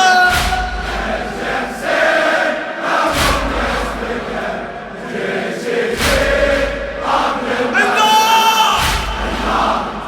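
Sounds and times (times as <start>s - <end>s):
deep drum beat: 0.0s - 1.8s, 3.1s - 4.4s, 6.0s - 6.9s, 8.8s - 10.0s
male voices chanting together: 0.0s - 10.0s.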